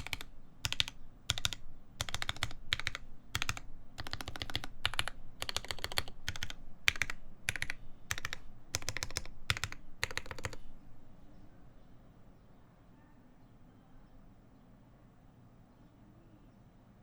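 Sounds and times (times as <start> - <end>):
mechanical keyboard typing: 0.0 - 11.1.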